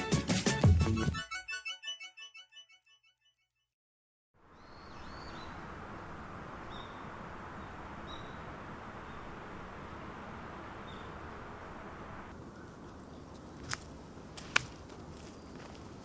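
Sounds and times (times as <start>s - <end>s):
outdoor ambient noise: 4.4s - 16.0s.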